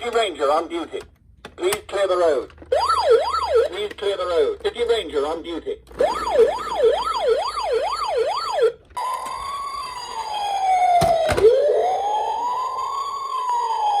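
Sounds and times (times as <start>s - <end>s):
toy electronic siren: 2.8s - 3.7s, 6.0s - 14.0s.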